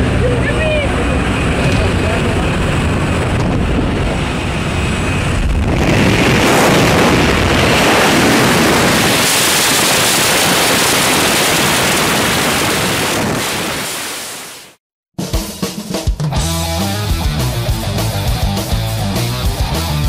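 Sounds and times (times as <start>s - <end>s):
wind rushing over microphone: 0.0s - 14.7s.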